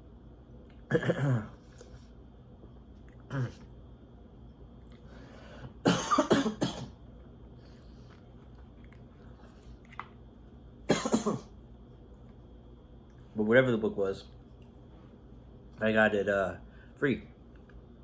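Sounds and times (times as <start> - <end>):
man coughing: 0.9 - 1.6, 3.3 - 3.7, 5.8 - 7.0, 10.9 - 11.5.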